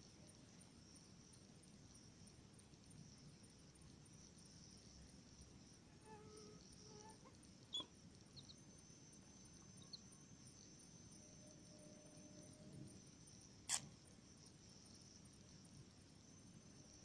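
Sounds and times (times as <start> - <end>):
insect chirring: 0.0 - 17.0
brief click: 13.7 - 13.9.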